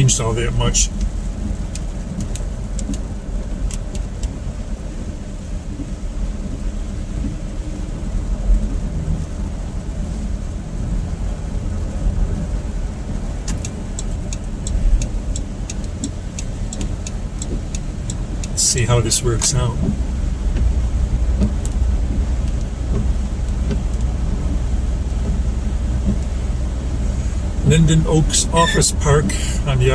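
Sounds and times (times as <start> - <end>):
car engine and tyres rumbling: 0.0 - 29.9
light evenly spaced ticks: 0.9 - 4.4, 13.4 - 20.7.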